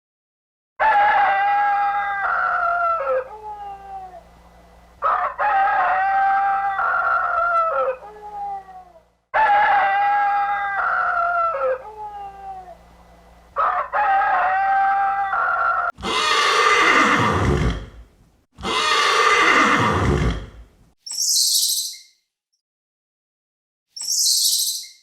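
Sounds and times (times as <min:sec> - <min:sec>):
rooster crowing: 0:00.8 - 0:12.9, 0:13.6 - 0:17.6
harsh animal calls: 0:00.8 - 0:13.0, 0:13.6 - 0:18.0, 0:18.6 - 0:20.6.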